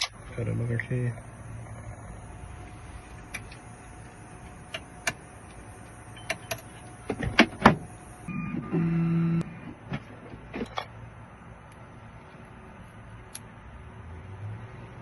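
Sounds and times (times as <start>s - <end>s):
electric motor humming: 0.3s - 9.4s.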